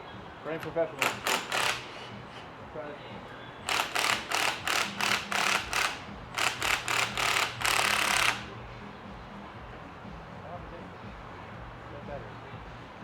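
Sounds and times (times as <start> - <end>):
power wrench bursts: 0.9 - 2.5, 3.7 - 8.5.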